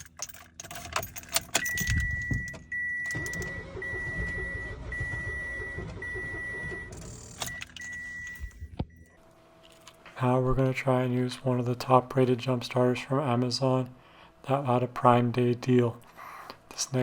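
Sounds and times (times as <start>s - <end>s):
dashboard warning chime: 1.6s - 9.2s.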